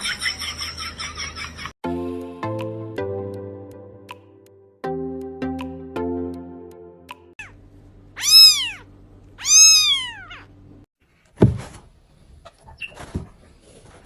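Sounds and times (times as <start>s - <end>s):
low steady hum: 7.4s - 10.9s
cat meowing: 8.2s - 10.5s
faint knocks and rustles: 11.0s - 14.0s
dull thud: 11.4s - 11.9s.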